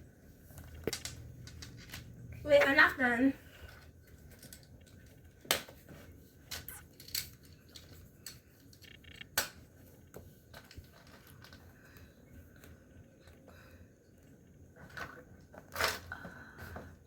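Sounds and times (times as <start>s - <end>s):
plastic toys clicking and tapping: 0.6s - 2.1s.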